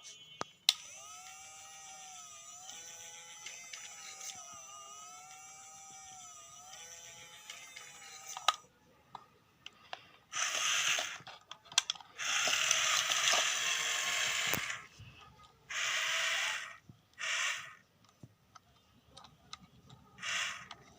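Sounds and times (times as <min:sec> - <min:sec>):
small electric motors whirring: 0:00.7 - 0:08.7, 0:10.3 - 0:15.0, 0:15.7 - 0:17.9, 0:20.0 - 0:20.9.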